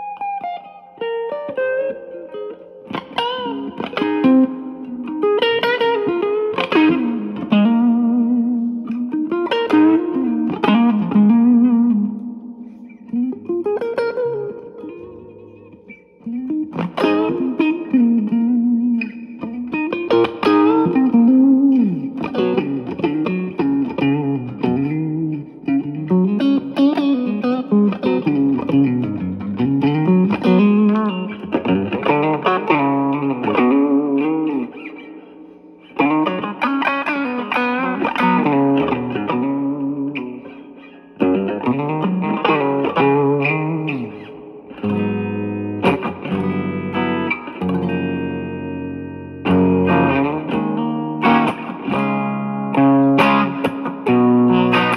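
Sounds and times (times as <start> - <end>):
electric guitar lead phrases: 0.0 - 54.9.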